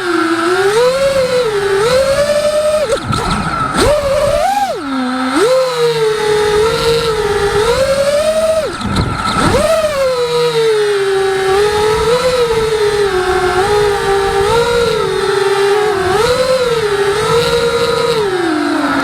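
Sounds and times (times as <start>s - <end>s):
drone motors whining: 0.0s - 19.0s.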